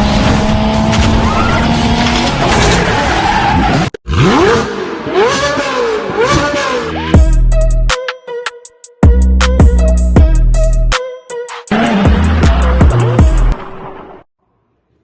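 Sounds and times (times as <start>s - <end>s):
tyres skidding and squealing: 0.0s - 7.3s, 11.5s - 14.3s
music beat: 7.0s - 13.6s.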